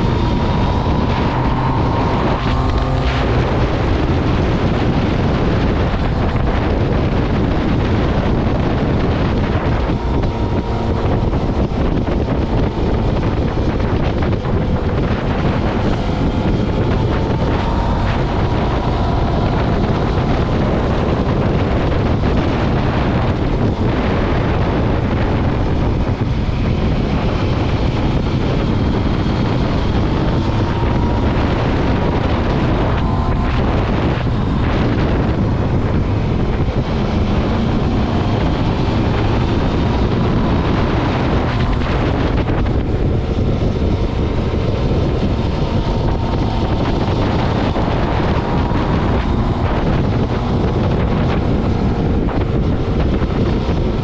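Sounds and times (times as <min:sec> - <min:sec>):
motorcycle engine: 0:00.0 - 0:54.0
wind rushing over microphone: 0:00.0 - 0:54.0.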